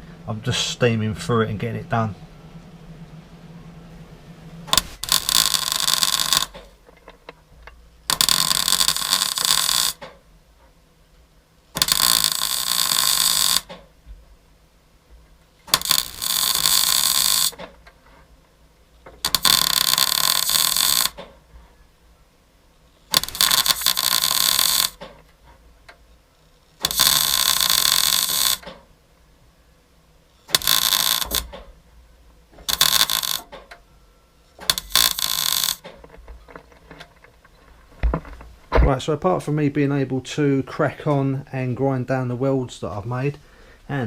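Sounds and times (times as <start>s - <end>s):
welder arc crackle and hiss: 4.7s - 6.8s, 8.1s - 10.2s, 11.7s - 13.8s, 15.6s - 18.3s, 19.0s - 21.3s, 23.0s - 25.3s, 26.6s - 28.9s, 30.4s - 31.6s, 32.6s - 33.6s, 34.6s - 36.0s.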